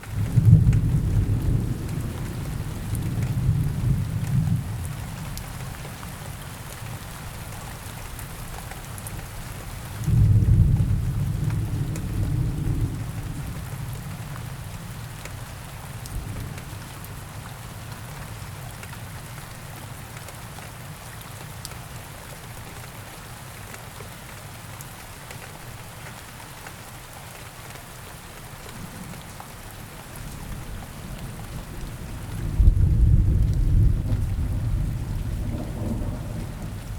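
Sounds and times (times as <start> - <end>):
heavy rain falling: 0.0 - 36.9
rolling thunder: 10.1 - 14.0, 30.2 - 36.9.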